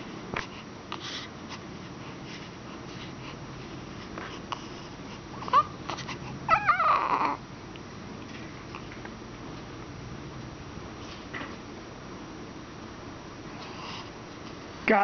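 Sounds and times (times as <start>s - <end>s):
dog yawning with squeaky whine: 6.5s - 7.4s.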